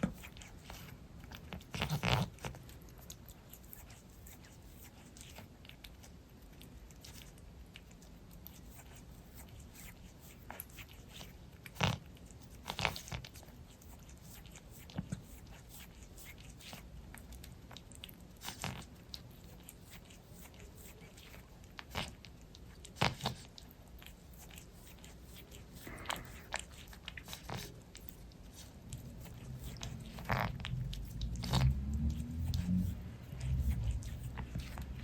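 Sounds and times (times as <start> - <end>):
cat licking fur: 0.0 - 35.0
low rumble: 28.8 - 35.0.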